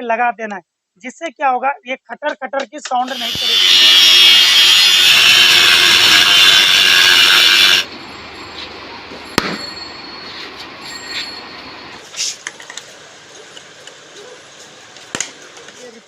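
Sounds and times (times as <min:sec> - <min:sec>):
power tool cutting metal: 0:03.0 - 0:07.9.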